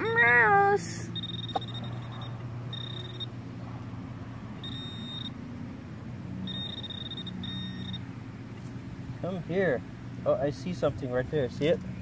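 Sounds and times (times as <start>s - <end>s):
high-pitched pinpointer beeps: 1.1s - 3.4s, 4.6s - 5.4s, 6.4s - 8.0s.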